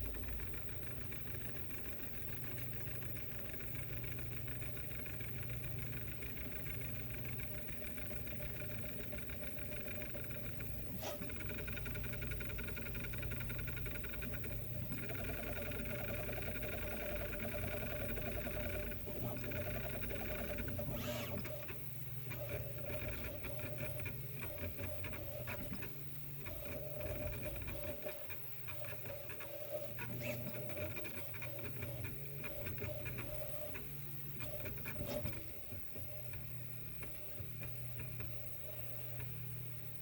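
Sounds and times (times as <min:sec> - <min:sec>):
rapid irregular ticking: 0:00.1 - 0:20.8.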